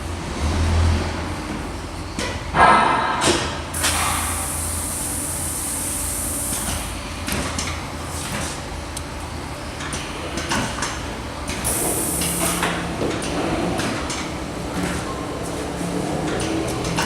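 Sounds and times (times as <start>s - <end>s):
high air hiss: 3.8s - 7.0s, 11.6s - 12.9s
machine mechanism clicking and clunking: 16.1s - 17.0s.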